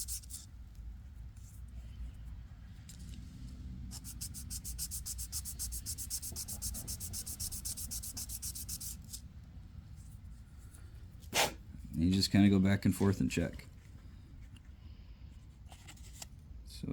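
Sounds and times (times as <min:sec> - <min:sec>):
sandpaper rubbing back and forth: 0:00.0 - 0:00.4, 0:03.9 - 0:09.2.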